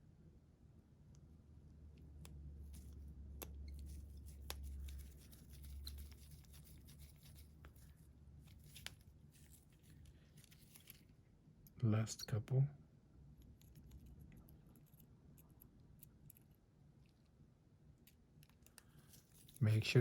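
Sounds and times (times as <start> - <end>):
low steady hum: 0.0 - 20.0
screwdriver ticks and scraping: 13.4 - 17.2.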